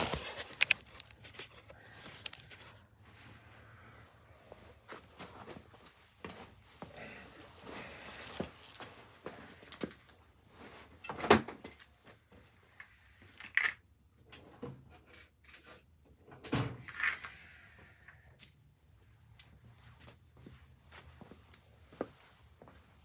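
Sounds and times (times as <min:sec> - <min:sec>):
short hiss: 0:06.1 - 0:08.5.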